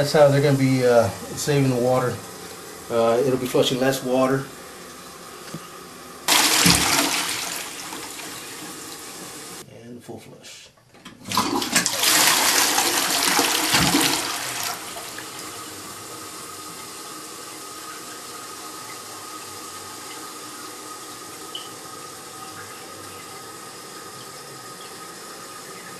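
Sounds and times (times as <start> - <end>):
toilet flushing: 0.0 - 9.6, 11.0 - 25.9
toilet tank refilling hiss: 0.0 - 9.6, 11.2 - 25.9
faint steady whine: 0.0 - 11.1.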